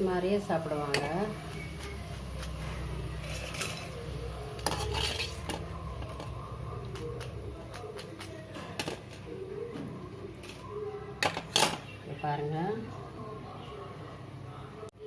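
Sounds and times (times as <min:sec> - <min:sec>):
metal spoon scraping a pan: 0:00.7 - 0:07.0.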